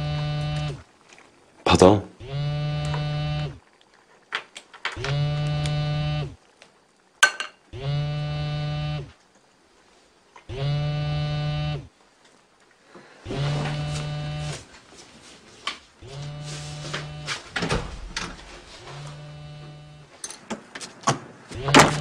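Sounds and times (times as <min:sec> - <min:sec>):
mobile phone vibrating: 0:00.0 - 0:00.8, 0:02.2 - 0:03.6, 0:05.0 - 0:06.4, 0:07.8 - 0:09.1, 0:10.5 - 0:11.9, 0:13.2 - 0:14.7, 0:16.0 - 0:17.5, 0:18.8 - 0:20.1, 0:21.6 - 0:22.0.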